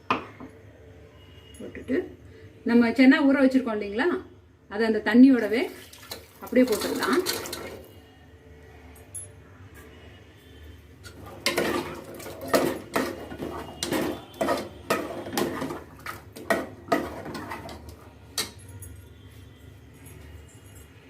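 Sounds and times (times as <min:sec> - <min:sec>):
metal spoon clanking on pot: 0:06.7 - 0:07.8, 0:11.0 - 0:18.6.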